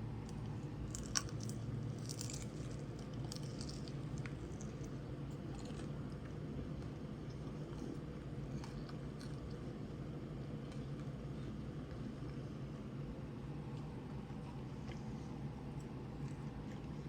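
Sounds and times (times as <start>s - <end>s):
steady low hum: 0.0s - 17.0s
food crackling: 0.3s - 6.4s
wet crunchy chewing: 0.3s - 9.8s.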